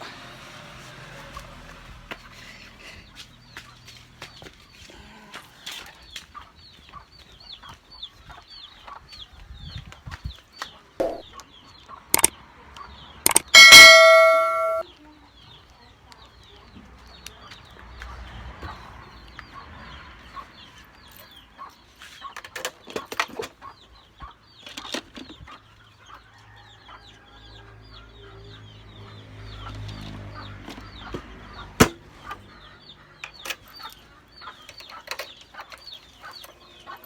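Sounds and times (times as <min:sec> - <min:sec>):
chickens clucking: 0:04.9 - 0:14.2, 0:15.4 - 0:37.0
sharp knocks and clanks: 0:11.0 - 0:11.3, 0:13.3 - 0:14.8.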